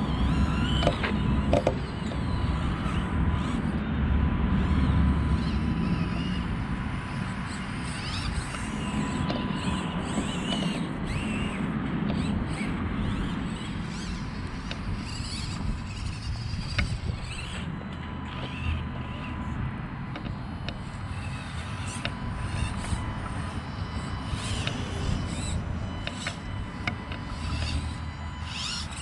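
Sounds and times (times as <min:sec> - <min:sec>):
small electric motors whirring: 0:00.0 - 0:29.0
drivetrain creaks and clicks: 0:00.6 - 0:02.2, 0:09.2 - 0:09.5.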